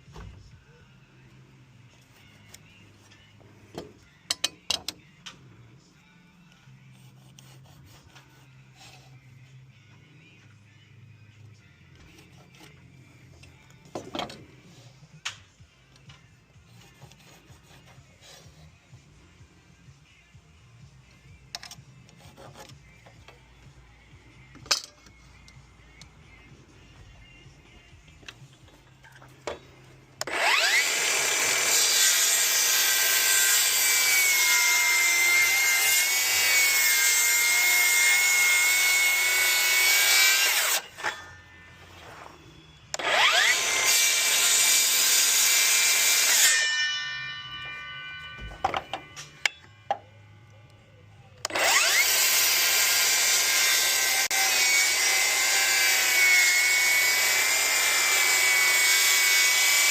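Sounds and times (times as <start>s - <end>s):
power saw cutting wood: 16.7s - 18.7s, 30.2s - 41.4s, 42.9s - 48.2s, 51.4s - 59.9s.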